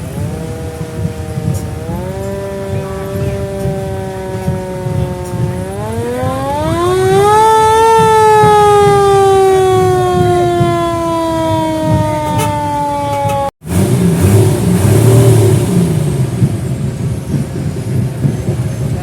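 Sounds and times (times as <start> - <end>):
fire truck siren falling in pitch: 0.0 - 13.5
irregular noisy rumble: 0.0 - 19.0.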